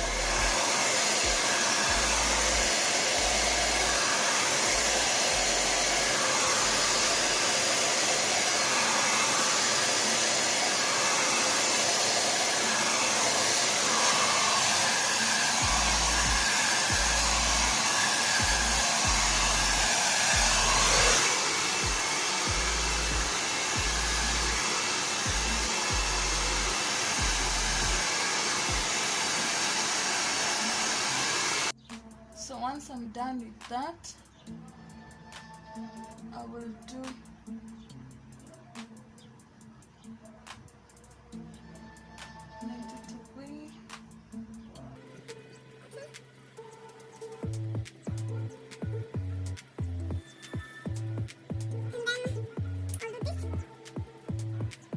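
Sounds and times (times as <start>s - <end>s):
blow dryer running: 0.0s - 31.8s.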